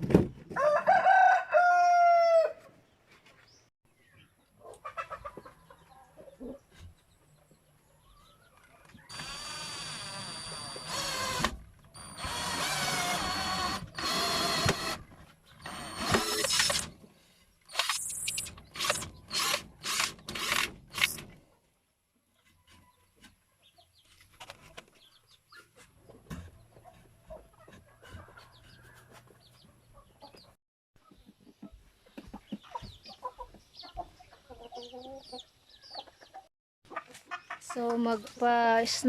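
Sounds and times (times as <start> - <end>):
rooster crowing: 0.6 - 2.6
power drill running: 9.1 - 15.0, 15.6 - 16.9, 17.7 - 21.2.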